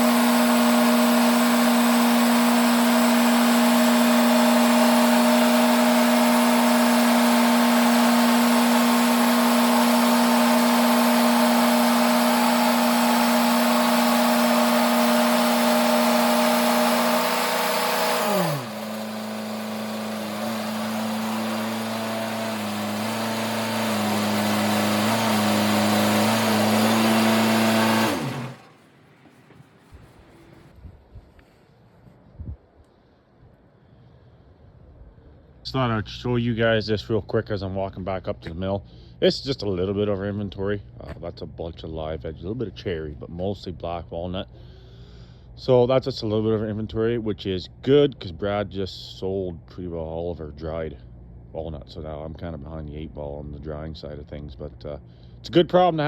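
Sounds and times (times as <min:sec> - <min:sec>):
sawmill machinery running: 0:00.0 - 0:30.7.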